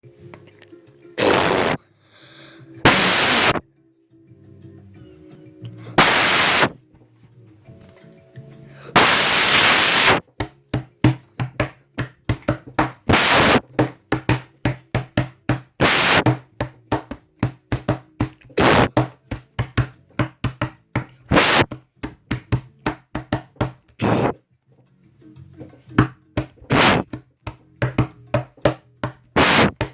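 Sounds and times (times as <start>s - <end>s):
bursts of hissing noise: 2.8s - 3.6s, 6.0s - 6.8s, 9.0s - 10.2s, 13.1s - 13.6s, 15.8s - 16.3s, 18.6s - 18.9s, 21.3s - 21.7s, 29.4s - 29.8s
sharp rhythmic knocks: 9.0s - 23.9s, 26.4s - 29.9s.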